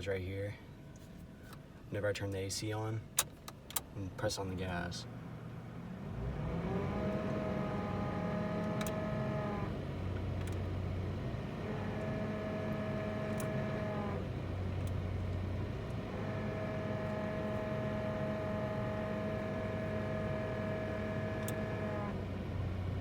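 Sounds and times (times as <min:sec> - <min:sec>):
truck engine revving: 0:05.9 - 0:23.0.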